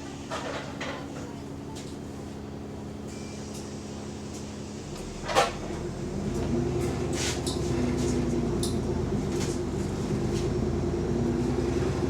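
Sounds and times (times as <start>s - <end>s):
diesel bus engine pulling away: 3.1s - 12.0s.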